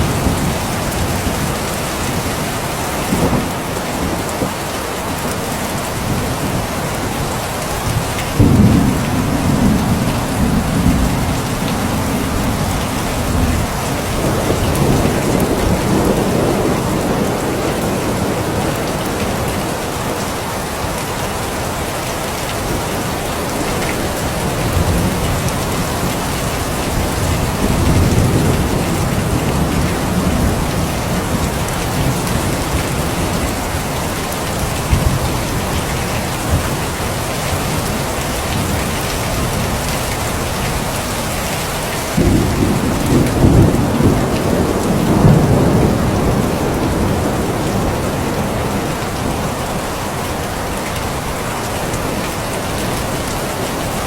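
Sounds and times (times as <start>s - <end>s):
thunder rumbling: 0.0s - 20.3s, 22.5s - 50.4s
heavy rain falling: 0.0s - 54.0s.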